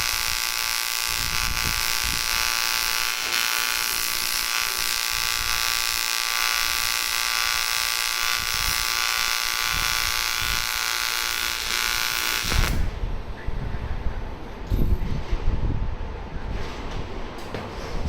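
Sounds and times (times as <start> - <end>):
welding arc buzzing: 0.0 - 13.0.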